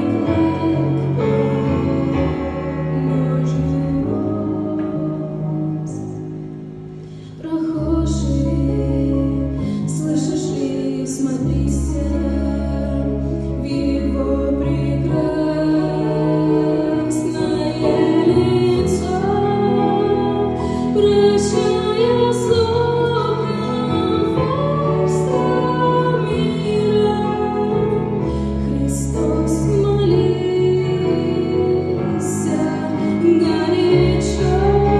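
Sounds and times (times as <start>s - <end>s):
woman singing: 0.0s - 6.2s, 7.3s - 34.9s.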